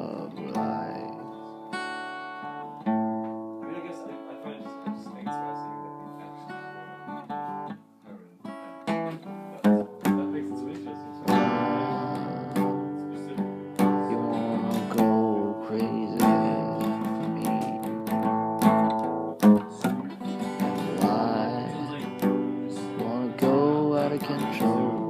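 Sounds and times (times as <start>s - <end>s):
acoustic guitar strumming chords: 0.0s - 25.0s.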